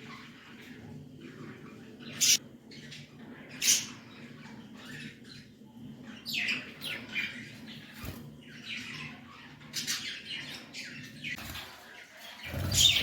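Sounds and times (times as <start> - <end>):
budgerigars chirping: 12.4 - 13.0.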